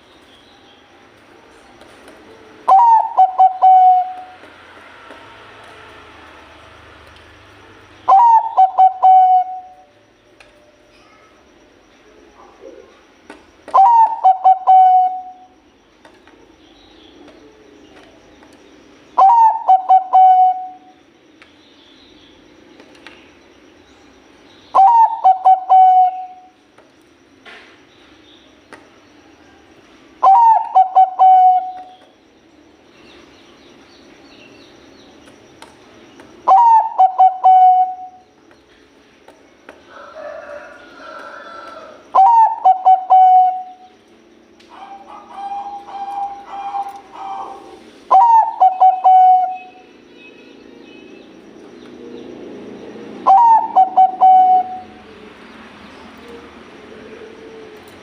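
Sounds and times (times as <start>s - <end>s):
zebra dove cooing: 2.5s - 4.4s, 8.1s - 9.9s, 13.7s - 15.5s, 19.2s - 20.9s, 24.7s - 26.5s, 29.5s - 32.0s, 36.4s - 38.2s, 40.4s - 43.9s, 44.7s - 49.8s, 53.2s - 55.4s, 56.0s - 58.0s.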